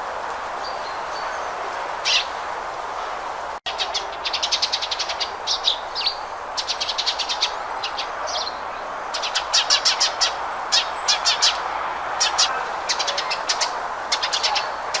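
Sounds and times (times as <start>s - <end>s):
sparrow chirping: 3.7s - 11.6s, 12.2s - 15.0s.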